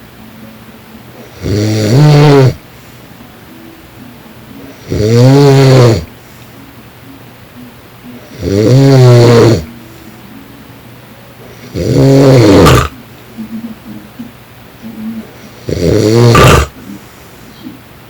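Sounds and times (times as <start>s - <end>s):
man snoring loudly: 1.2s - 2.6s, 4.7s - 6.1s, 8.3s - 9.7s, 11.7s - 12.9s, 15.6s - 16.8s.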